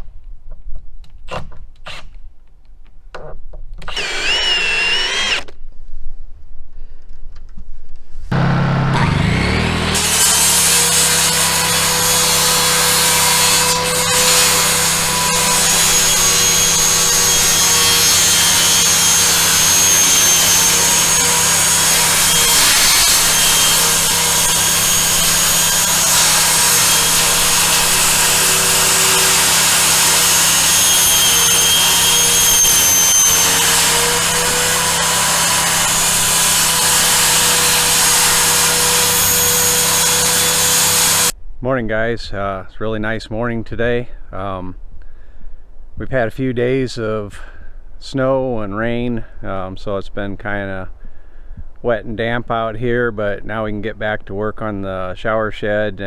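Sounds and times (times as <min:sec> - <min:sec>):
sawmill cutting wood: 0:03.8 - 0:05.5, 0:08.3 - 0:41.4.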